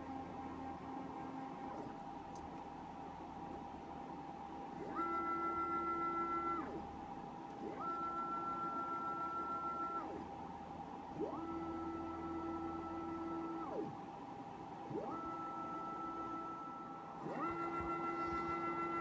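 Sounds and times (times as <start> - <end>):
steady high motor whine: 3.3 - 19.0
stepper motors whining: 17.2 - 19.0.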